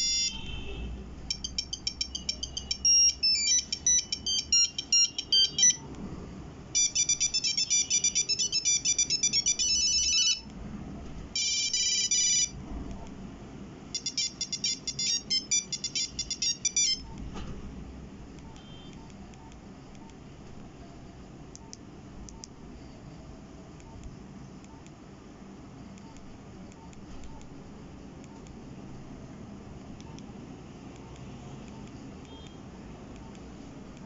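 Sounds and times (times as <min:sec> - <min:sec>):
monophonic beeping ringtone melodies: 0:00.0 - 0:00.4, 0:01.3 - 0:05.8, 0:06.7 - 0:10.5, 0:11.4 - 0:12.6, 0:13.9 - 0:17.1.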